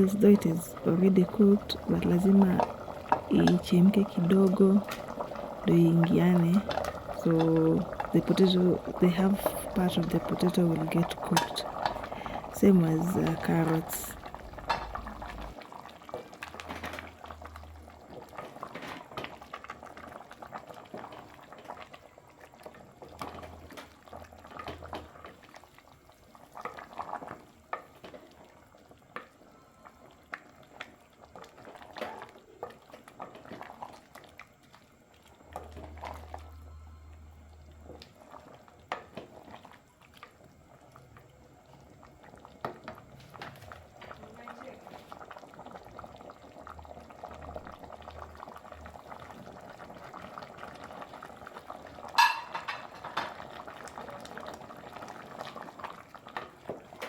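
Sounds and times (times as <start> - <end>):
soft pops and crackles: 0.0 - 17.3
stew bubbling in a pot: 0.0 - 57.0.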